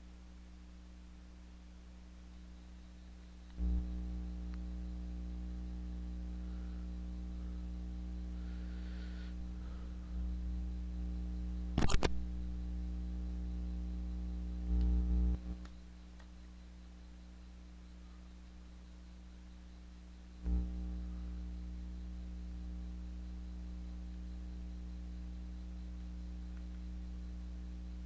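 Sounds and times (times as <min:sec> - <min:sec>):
electrical mains hum: 0:00.0 - 0:28.0
sharp clicks: 0:11.8 - 0:12.2.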